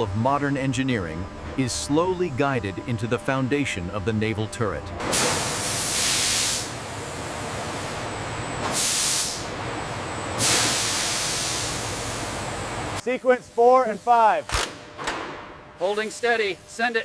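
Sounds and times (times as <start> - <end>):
machinery noise: 0.0 - 13.0
pressurized air hissing: 5.1 - 8.0, 8.7 - 9.5, 10.4 - 12.4.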